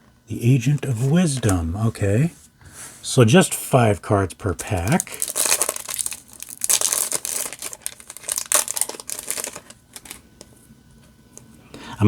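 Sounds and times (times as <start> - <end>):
foil wrapper crinkling and tearing: 4.6 - 10.6.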